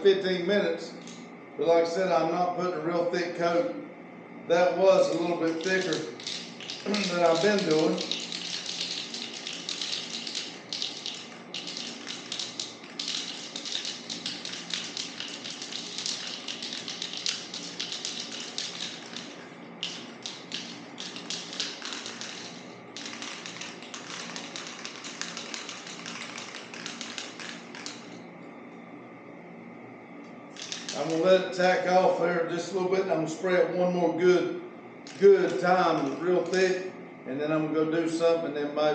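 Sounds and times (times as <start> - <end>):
aerosol spray can hissing: 5.5 - 28.1, 30.6 - 31.2.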